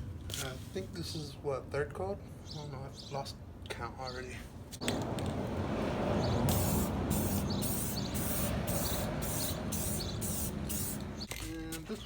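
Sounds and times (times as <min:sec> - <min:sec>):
aerosol can spraying hiss: 0:06.5 - 0:11.1.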